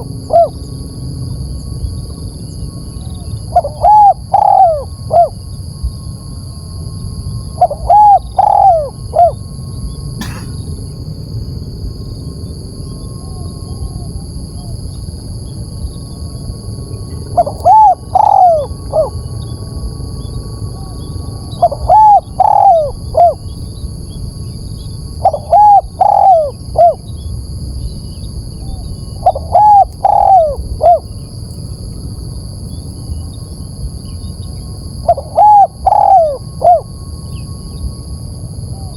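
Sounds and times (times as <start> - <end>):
dove cooing: 0.0 - 0.6, 3.0 - 5.4, 7.6 - 9.4, 10.2 - 10.8, 17.3 - 19.2, 20.8 - 23.6, 25.2 - 27.2, 28.5 - 31.3, 35.1 - 36.9
faint high whine: 0.0 - 38.9.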